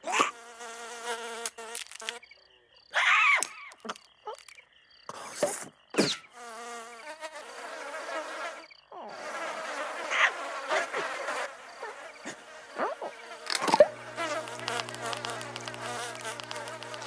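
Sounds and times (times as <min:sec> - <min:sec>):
wavering cartoon buzz: 0:10.1 - 0:17.0.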